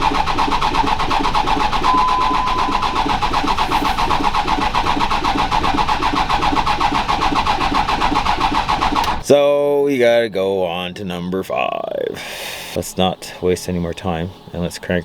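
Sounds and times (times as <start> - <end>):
diesel engine starter cranking: 0.0 - 9.3
steady beep: 1.7 - 4.7.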